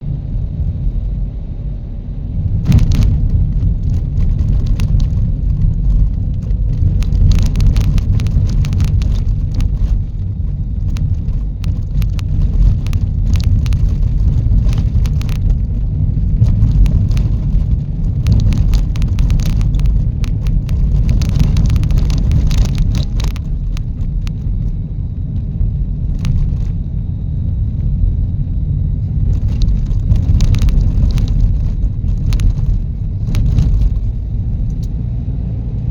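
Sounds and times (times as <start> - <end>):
road and engine rumble: 0.0 - 35.9
knocks and rattles: 2.6 - 24.5, 29.2 - 34.3.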